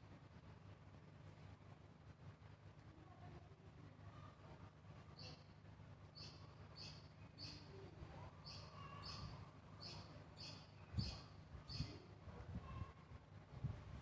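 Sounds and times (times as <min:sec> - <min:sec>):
low steady hum: 0:00.0 - 0:14.0
small bird chirping: 0:05.1 - 0:12.0.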